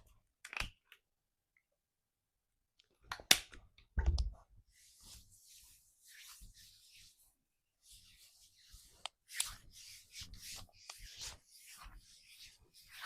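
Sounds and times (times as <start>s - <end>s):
hands rubbing on back: 4.7s - 13.0s.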